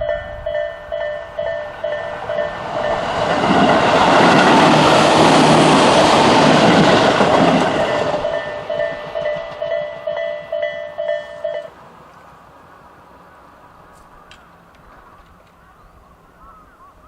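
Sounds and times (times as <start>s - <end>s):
crossing warning bell dinging: 0.0s - 11.8s
train wheels rushing on rails: 0.0s - 15.7s.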